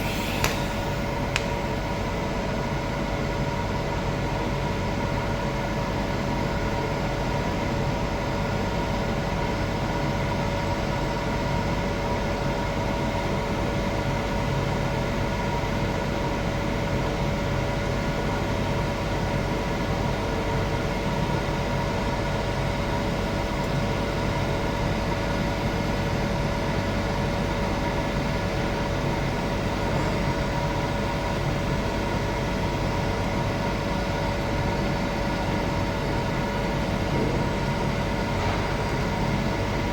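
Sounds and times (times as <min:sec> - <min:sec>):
welding arc crackling: 0:00.0 - 0:01.5
steady whine: 0:00.0 - 0:01.8.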